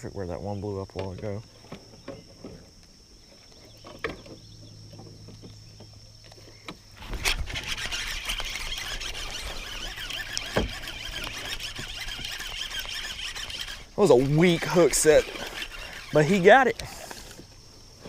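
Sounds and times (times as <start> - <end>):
faint insects high tone: 0.0 - 18.0
fishing reel squealing: 7.0 - 17.4.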